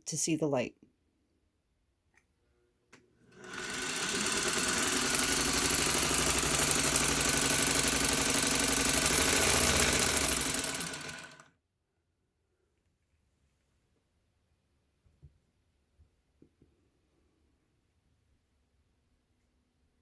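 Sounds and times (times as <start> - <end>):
sewing machine motor running: 3.3 - 11.5.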